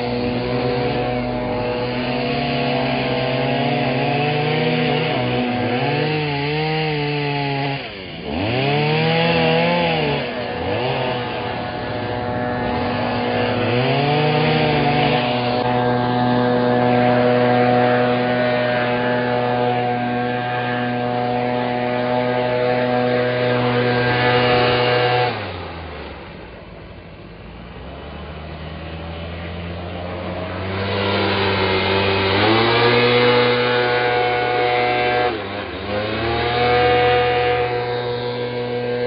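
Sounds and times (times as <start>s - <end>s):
small gas engine revving: 0.0s - 39.0s.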